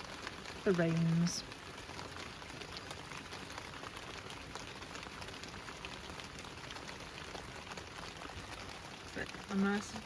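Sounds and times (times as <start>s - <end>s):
heavy rain falling: 0.0s - 10.0s.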